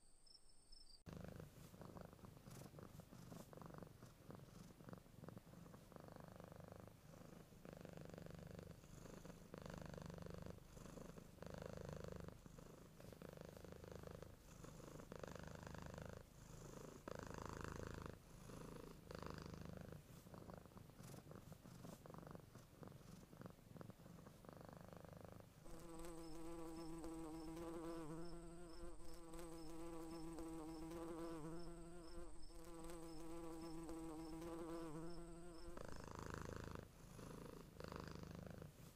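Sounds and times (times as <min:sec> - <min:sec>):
cat purring: 0:01.1 - 0:38.9.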